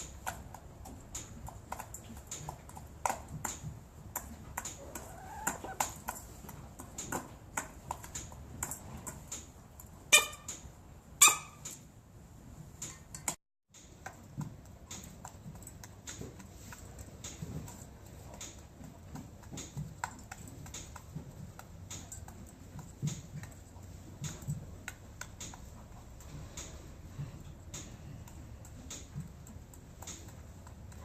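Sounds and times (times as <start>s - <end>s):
small clicks and taps: 12.8s - 31.0s.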